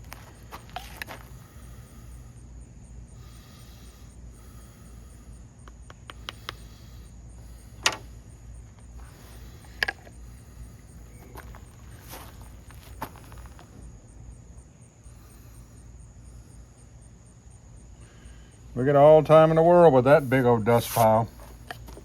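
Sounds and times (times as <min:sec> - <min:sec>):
insects chirping: 0:00.0 - 0:22.0
sharp clicks and knocks: 0:07.8 - 0:08.1.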